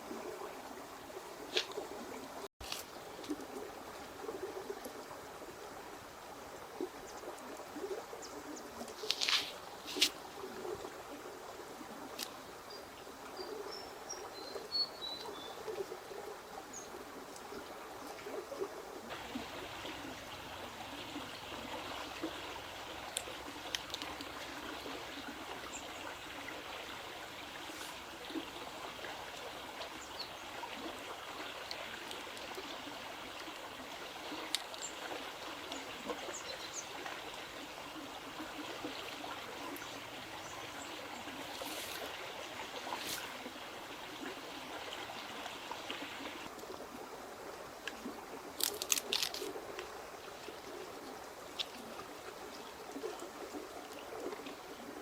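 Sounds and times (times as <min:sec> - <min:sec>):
water running and trickling: 0:19.1 - 0:46.7
small clicks and ticks: 0:23.0 - 0:24.6, 0:34.4 - 0:35.0.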